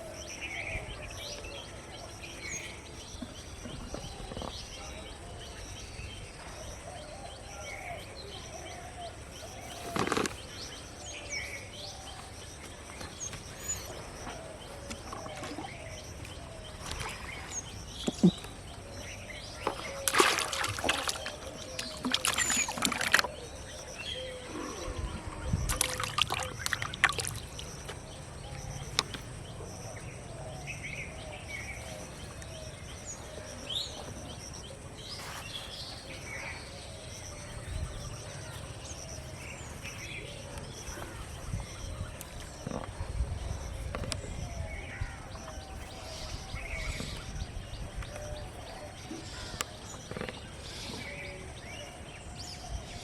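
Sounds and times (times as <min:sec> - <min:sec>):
birds chirping faintly: 0:00.0 - 0:53.0
water splashing: 0:15.1 - 0:18.8, 0:19.5 - 0:23.6, 0:24.4 - 0:28.0.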